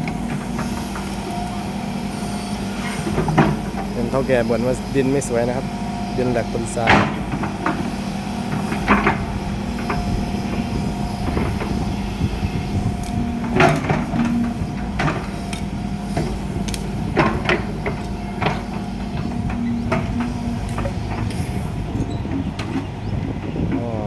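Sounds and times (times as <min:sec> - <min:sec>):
diesel engine running: 0:00.0 - 0:24.0
metallic knocks and clanks: 0:03.0 - 0:04.3, 0:08.5 - 0:12.0, 0:13.0 - 0:22.9.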